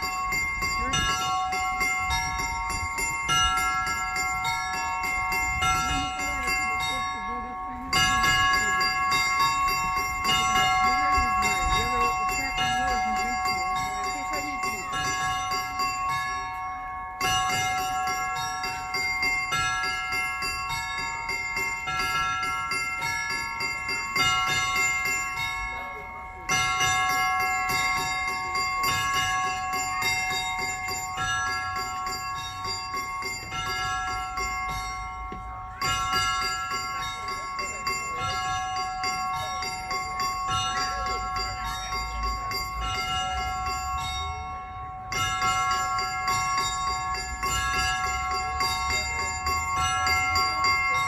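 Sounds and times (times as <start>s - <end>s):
church bells ringing: 0.0s - 51.0s.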